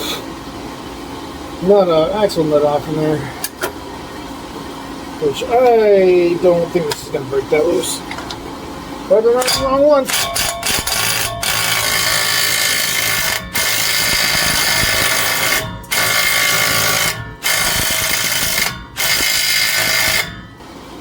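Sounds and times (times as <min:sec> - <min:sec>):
impact wrench hammering: 0:09.4 - 0:20.6.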